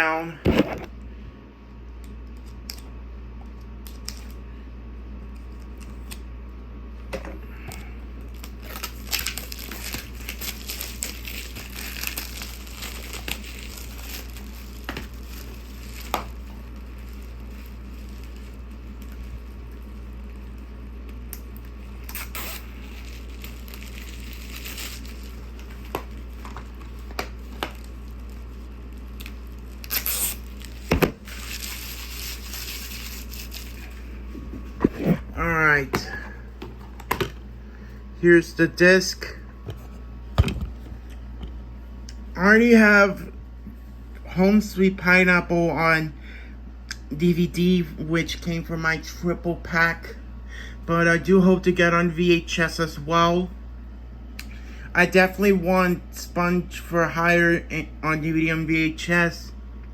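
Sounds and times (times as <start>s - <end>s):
steady low hum: 0.0s - 59.9s
packaging torn and crinkled: 8.2s - 34.1s.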